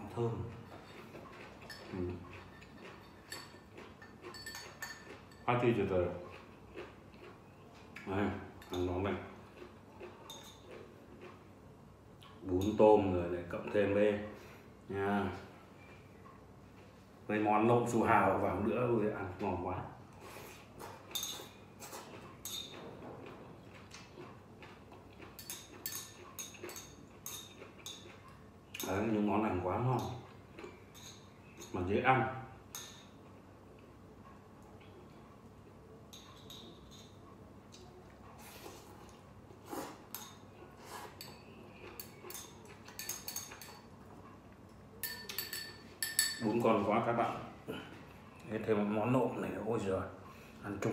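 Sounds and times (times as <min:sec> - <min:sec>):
chewing: 0:00.4 - 0:05.4, 0:06.1 - 0:08.1, 0:09.2 - 0:12.4, 0:20.1 - 0:28.5
utensils clinking against a bowl: 0:00.4 - 0:11.5, 0:12.2 - 0:14.0, 0:20.8 - 0:33.4, 0:36.1 - 0:39.2, 0:39.9 - 0:48.5.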